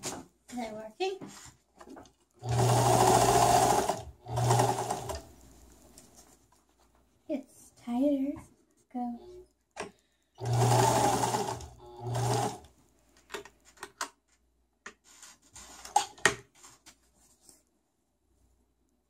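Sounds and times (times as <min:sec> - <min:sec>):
sewing machine stitching: 0:02.4 - 0:05.3, 0:10.4 - 0:12.7.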